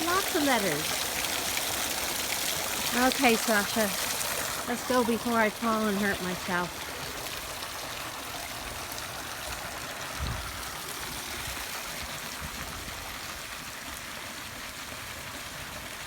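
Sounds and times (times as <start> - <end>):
fountain water splashing: 0.0 - 16.0.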